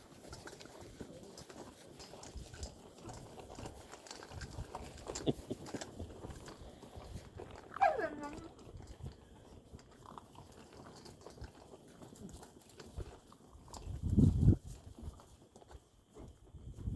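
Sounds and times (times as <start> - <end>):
puppies crunching kibble: 0.0 - 16.9
puppy whining: 7.7 - 8.6.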